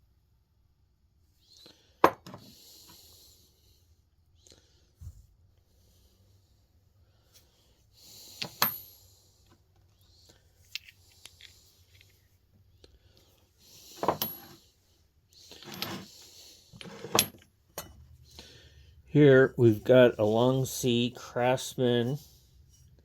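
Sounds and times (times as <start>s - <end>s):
steel tools clinking: 14.0s - 14.6s, 15.6s - 16.1s.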